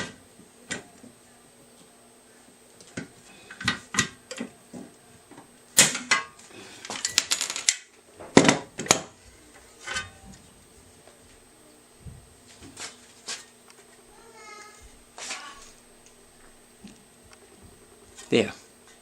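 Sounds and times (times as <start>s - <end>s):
metal parts clinking: 6.8s - 7.9s.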